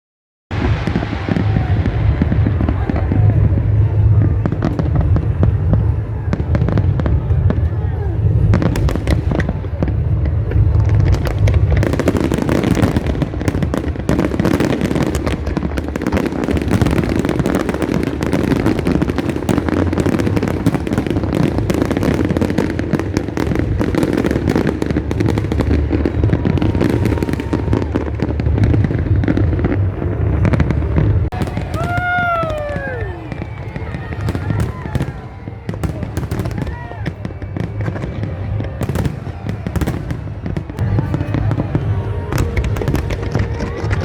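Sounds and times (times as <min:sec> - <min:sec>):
fireworks booms rumbling: 0:00.5 - 0:44.0
fireworks crackling: 0:00.5 - 0:44.0.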